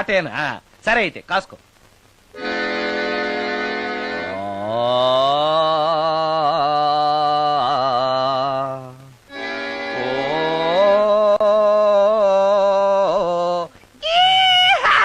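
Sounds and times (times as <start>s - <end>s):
woman singing wordless notes: 4.0s - 13.7s.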